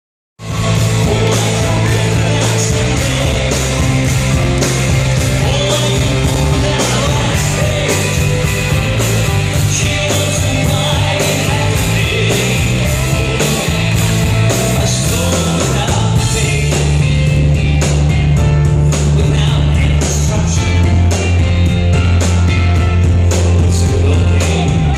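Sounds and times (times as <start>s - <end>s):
drums keeping a steady beat: 0.4s - 24.9s
rock band playing live: 0.4s - 24.9s.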